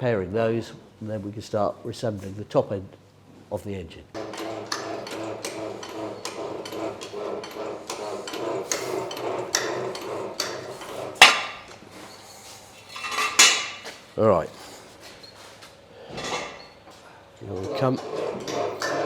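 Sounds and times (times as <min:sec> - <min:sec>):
steady mechanical hum: 0:00.0 - 0:19.0.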